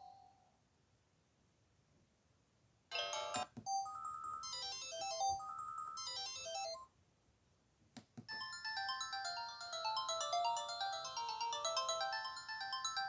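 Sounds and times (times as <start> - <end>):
mobile phone ringtone melody: 3.0 - 6.8, 8.3 - 13.0.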